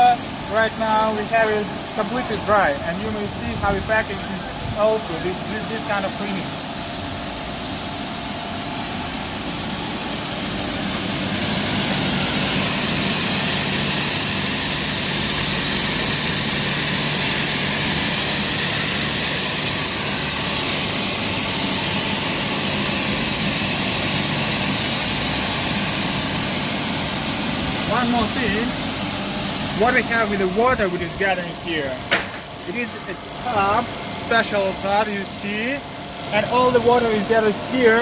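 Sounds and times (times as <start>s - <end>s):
low machine hum: 0.0s - 38.0s
rug washing machine rushing hiss: 0.0s - 38.0s.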